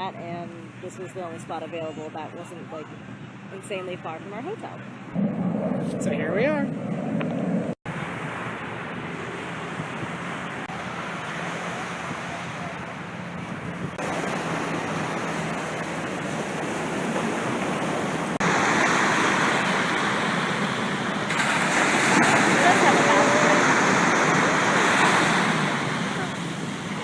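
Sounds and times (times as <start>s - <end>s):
wind on microphone: 4.4s - 27.0s
surf breaking on a beach: 7.9s - 27.0s.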